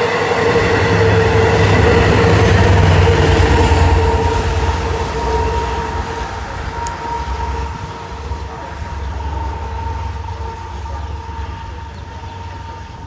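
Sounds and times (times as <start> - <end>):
train rumbling: 0.0 - 13.0.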